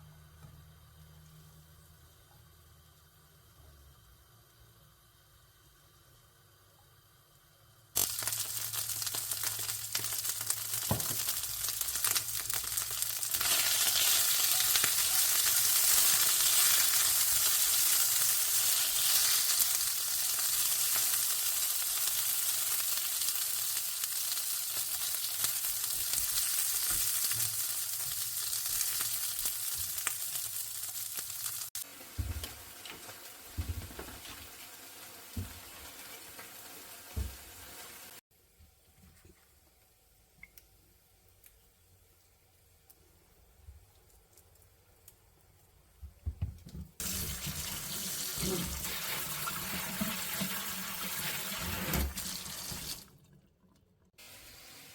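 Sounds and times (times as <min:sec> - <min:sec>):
food sizzling in frying pan: 0:08.0 - 0:38.2, 0:47.0 - 0:53.0, 0:54.2 - 0:54.9.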